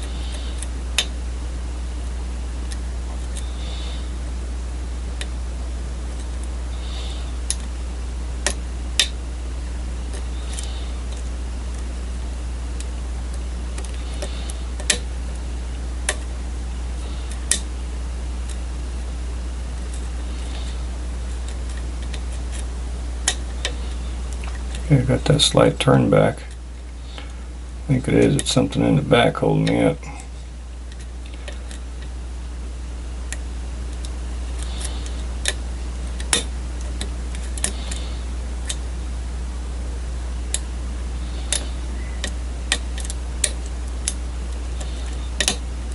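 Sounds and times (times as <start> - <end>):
low hum: 0.0 - 45.9
lock pick clicking pins: 45.0 - 45.6.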